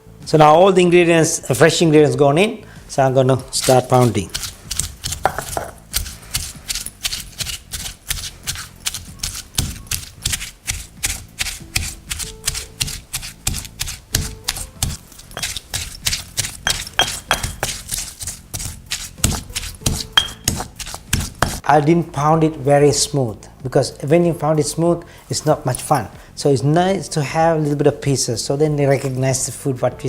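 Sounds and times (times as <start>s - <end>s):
pestle pounding in mortar: 3.5s - 21.6s.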